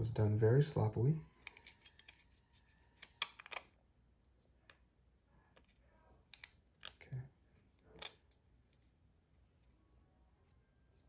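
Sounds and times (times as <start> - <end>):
small knife parts clicking: 1.4 - 2.3, 3.0 - 3.7.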